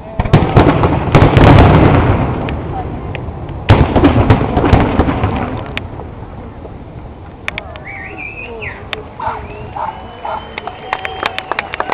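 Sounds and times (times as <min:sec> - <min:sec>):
fireworks bangs: 0:00.0 - 0:06.3.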